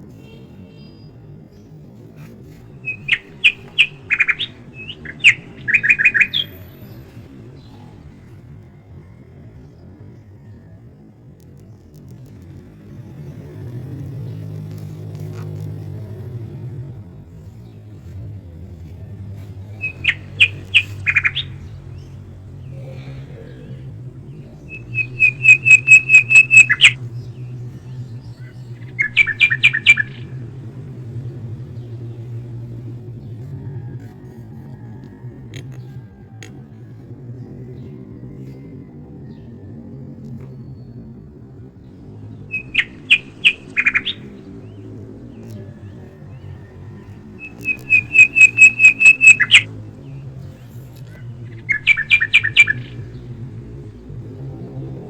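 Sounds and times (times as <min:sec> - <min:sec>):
songbird chirping: 0:00.0 - 0:10.7, 0:11.9 - 0:36.3, 0:39.4 - 0:55.0.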